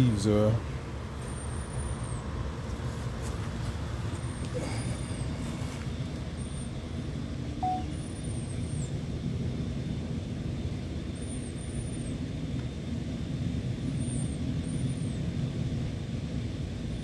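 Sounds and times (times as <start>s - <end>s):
high thin bird chirps: 7.6s - 8.0s
short mid-pitched beep: 7.6s - 8.0s.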